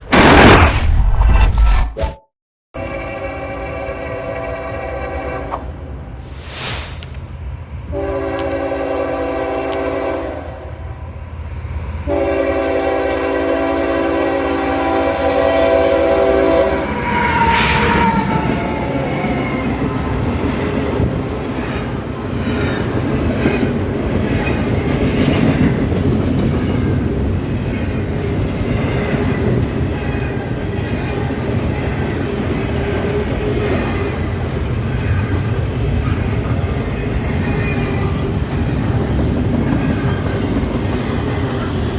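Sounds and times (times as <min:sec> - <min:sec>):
locomotive horn blast: 0:02.8 - 0:05.7, 0:07.9 - 0:10.7, 0:12.1 - 0:18.6
train wheels clattering on rails: 0:17.4 - 0:41.9.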